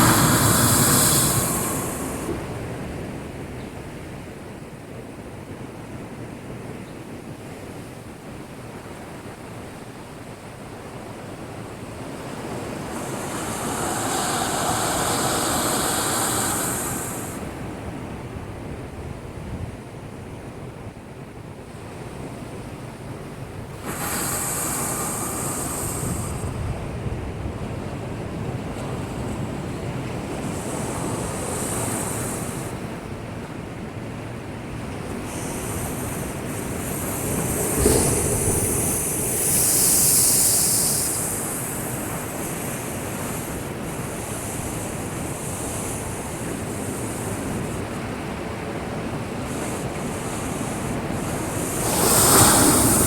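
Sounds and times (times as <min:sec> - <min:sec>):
waves breaking on breakwater: 0:00.0 - 0:03.2, 0:11.7 - 0:18.0, 0:28.6 - 0:53.0.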